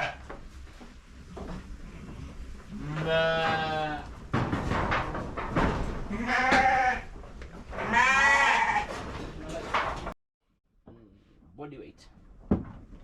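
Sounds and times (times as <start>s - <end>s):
sheep bleating: 2.8s - 4.1s, 7.8s - 8.9s.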